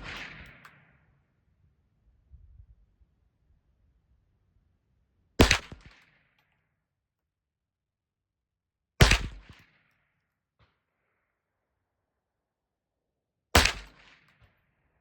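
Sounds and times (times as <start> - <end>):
rifle shots: 0.0 - 0.8, 5.4 - 6.0, 9.0 - 9.6, 13.6 - 14.1.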